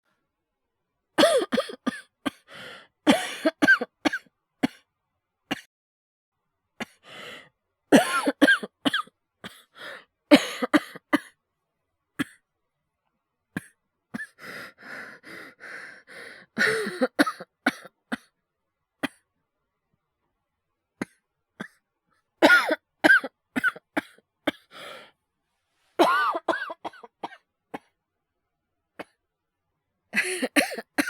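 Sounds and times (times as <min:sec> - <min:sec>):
man coughing: 0:01.2 - 0:02.4, 0:08.0 - 0:09.1, 0:26.0 - 0:27.4, 0:30.2 - 0:31.0.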